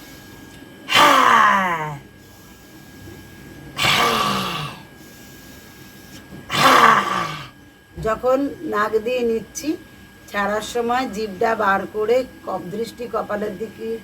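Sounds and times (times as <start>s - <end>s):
forceful throaty exhalations: 0.9s - 3.0s, 3.8s - 5.4s, 6.5s - 7.6s.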